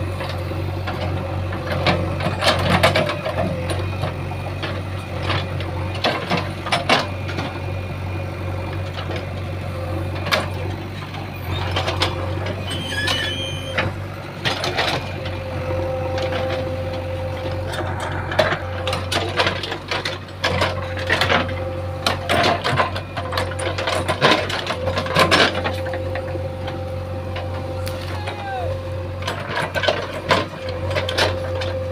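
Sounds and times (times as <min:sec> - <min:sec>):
diesel engine running: 0:00.0 - 0:31.9
machine knocks and clanks: 0:16.0 - 0:26.4
steady high tone: 0:25.9 - 0:29.3.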